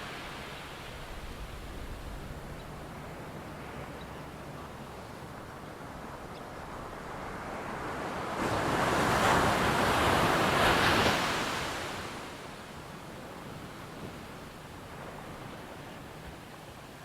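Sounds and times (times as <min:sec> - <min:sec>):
ocean wave breaking on shore: 0:06.8 - 0:17.0.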